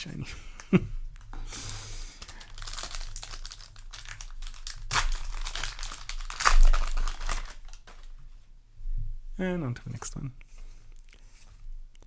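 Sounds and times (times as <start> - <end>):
wrappers and cards crinkling: 1.2 - 8.2.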